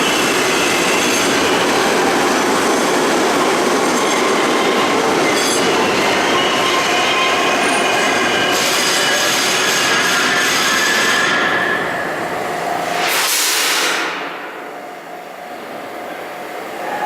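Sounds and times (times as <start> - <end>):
subway train rail rumble: 0.0 - 17.0
high wheel squeal: 3.8 - 12.2, 16.7 - 17.0.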